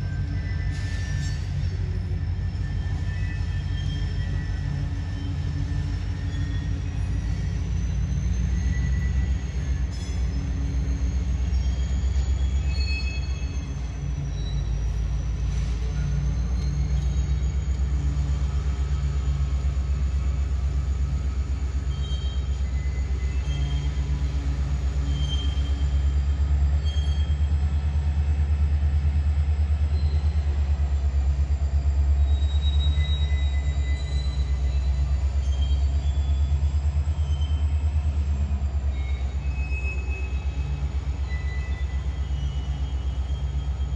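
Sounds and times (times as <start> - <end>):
thin wavering whine: 0.0 - 28.6
high wheel squeals: 0.0 - 43.9
train wheels rumbling on rails: 0.0 - 43.9.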